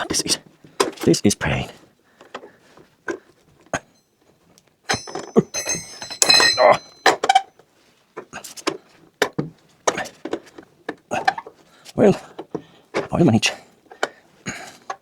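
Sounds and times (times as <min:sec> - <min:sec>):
metal tools clinking: 0:04.9 - 0:07.3.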